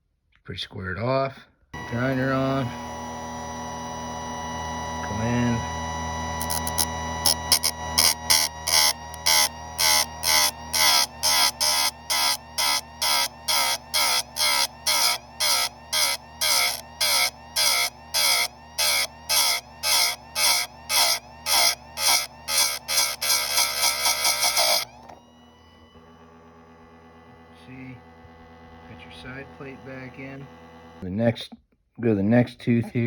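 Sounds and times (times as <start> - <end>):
short bursts of grinding: 1.8 - 25.2
grinder motor running: 1.8 - 31.0.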